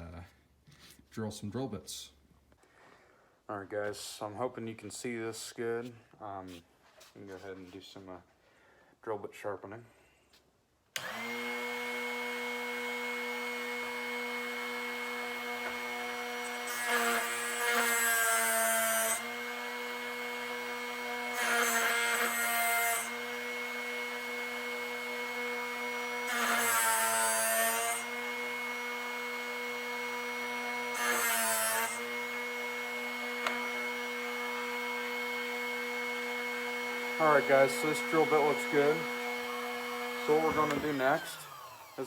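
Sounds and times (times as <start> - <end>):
drill bit grinding: 11.0 - 42.0
sharpener motor running: 35.8 - 42.0.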